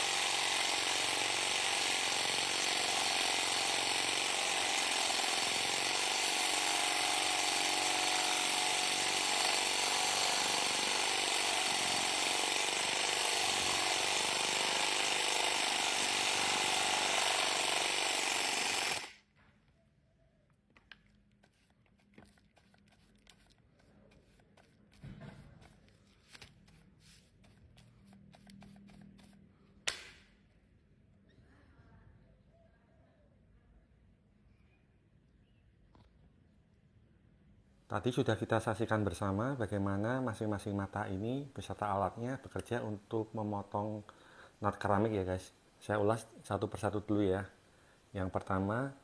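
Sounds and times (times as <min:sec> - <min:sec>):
power tool grinding grout: 0:00.0 - 0:19.2.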